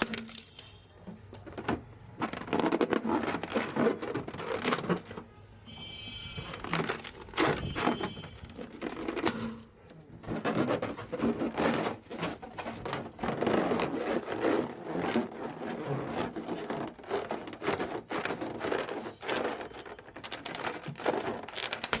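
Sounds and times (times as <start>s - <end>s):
balloon squeaks: 0.0s - 0.8s, 2.0s - 22.0s
balloons crinkling and rubbing: 0.0s - 22.0s.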